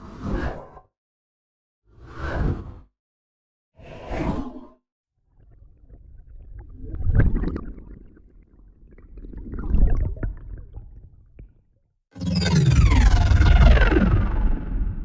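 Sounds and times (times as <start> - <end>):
deep rumbling whoosh: 12.2 - 15.0
synthetic whoosh with falling tones: 12.2 - 15.0.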